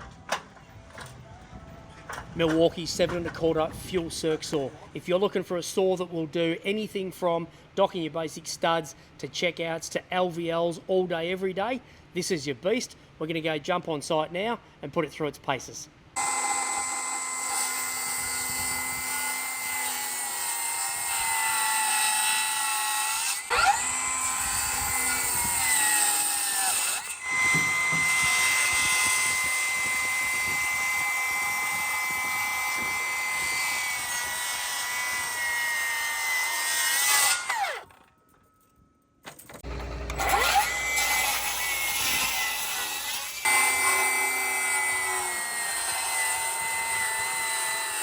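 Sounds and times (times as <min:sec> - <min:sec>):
circular saw cutting timber: 0:16.2 - 0:38.0, 0:39.6 - 0:48.0.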